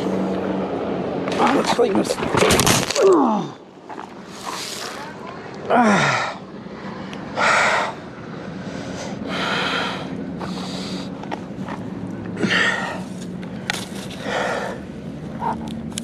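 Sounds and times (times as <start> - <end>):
man groaning: 3.0 - 3.6, 5.7 - 6.4
steady low hum: 3.4 - 16.0.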